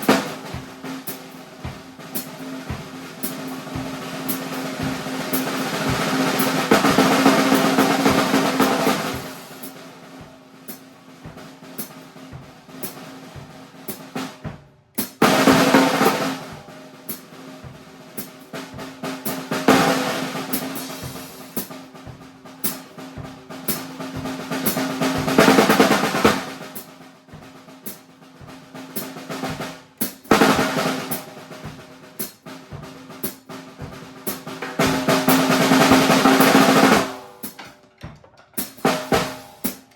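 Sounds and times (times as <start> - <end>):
drum kit solo: 0.0 - 39.9.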